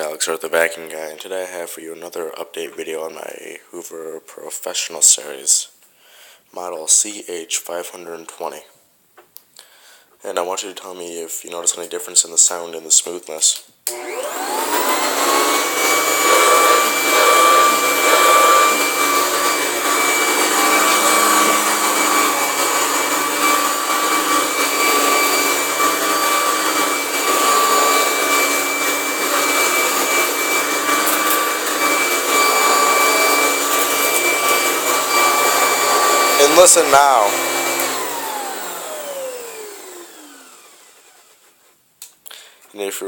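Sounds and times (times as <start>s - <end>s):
vacuum cleaner whine: 13.9s - 41.6s.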